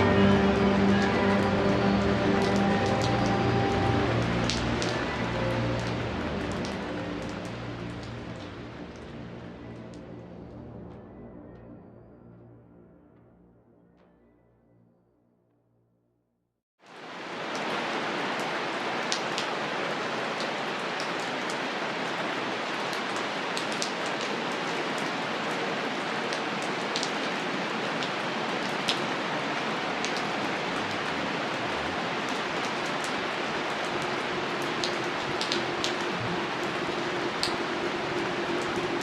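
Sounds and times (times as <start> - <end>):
steady rain hiss: 0.0 - 10.2, 16.8 - 39.0
raindrop ticks: 0.1 - 9.2, 22.9 - 25.6, 26.3 - 29.0, 30.0 - 39.0.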